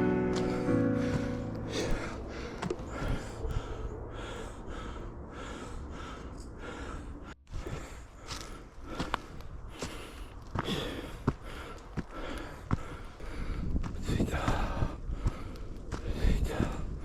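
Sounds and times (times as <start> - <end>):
piano notes: 0.0 - 4.2.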